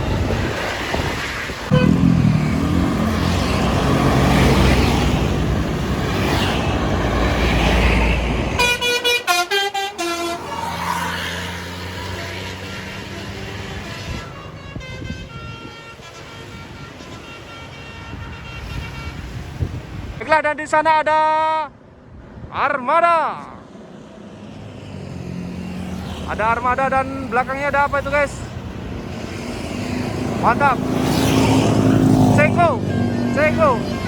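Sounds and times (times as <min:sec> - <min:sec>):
bus engine and road noise: 0:00.0 - 0:34.0
musical bus horn tune: 0:01.7 - 0:02.3, 0:08.6 - 0:10.6, 0:12.3 - 0:19.4.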